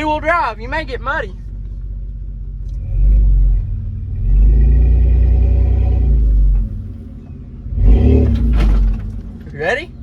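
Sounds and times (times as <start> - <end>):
engine revving: 2.6 - 7.1, 7.7 - 9.9.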